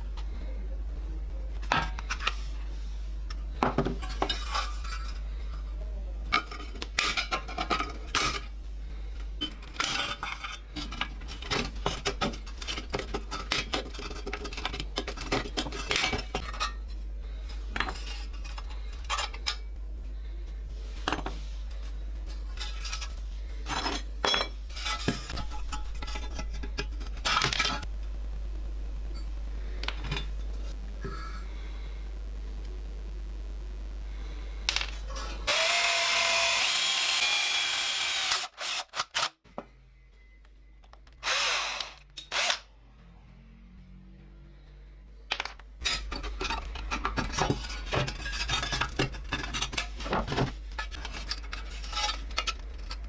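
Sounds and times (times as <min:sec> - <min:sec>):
low hum: 0:00.0 - 0:38.8.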